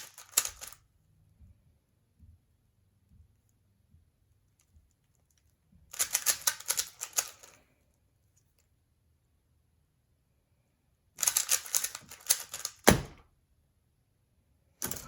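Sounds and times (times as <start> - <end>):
puzzle cube plastic clicks: 0.0 - 0.8, 5.1 - 7.6, 11.2 - 13.1.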